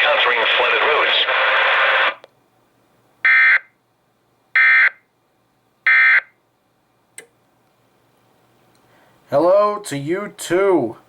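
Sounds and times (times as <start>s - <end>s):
click: 7.2s - 7.8s.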